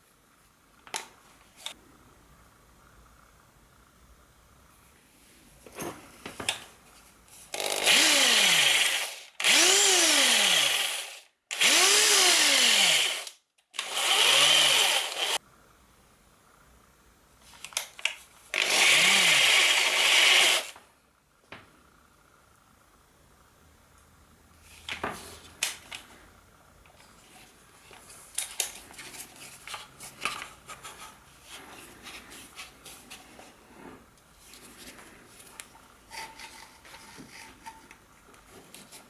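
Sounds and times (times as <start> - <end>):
hammer drill motor: 7.5 - 15.4, 18.5 - 20.8.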